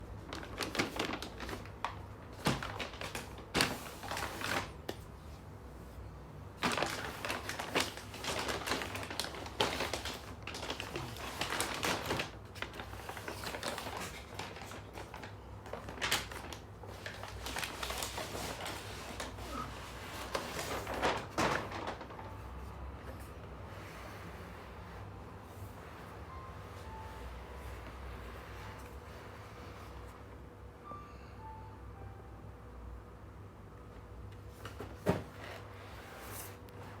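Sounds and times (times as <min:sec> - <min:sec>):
paper rustling: 0:00.2 - 0:05.1, 0:06.6 - 0:25.0.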